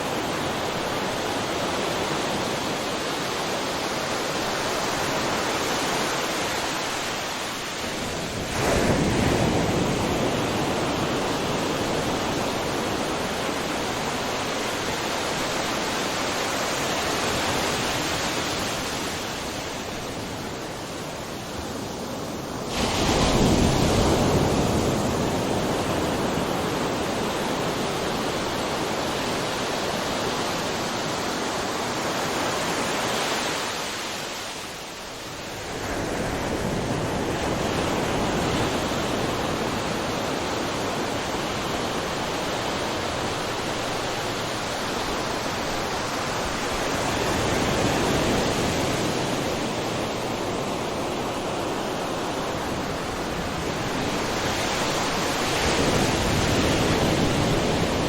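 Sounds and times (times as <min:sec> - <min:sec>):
waves breaking and washing: 0:00.0 - 0:58.0
wave crashing: 0:22.6 - 0:34.7.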